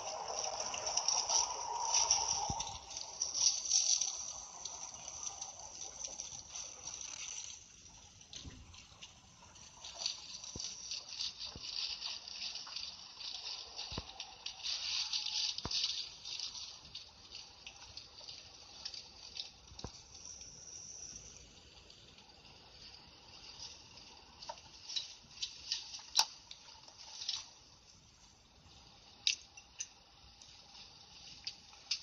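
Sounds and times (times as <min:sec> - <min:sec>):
faint high hiss: 0:00.0 - 0:32.0
clicks and ticks: 0:29.1 - 0:32.0.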